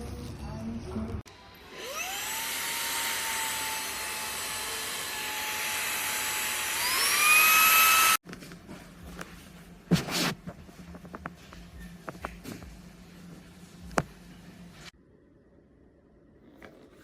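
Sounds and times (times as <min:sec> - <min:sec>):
vacuum cleaner motor whine: 0:01.3 - 0:08.2.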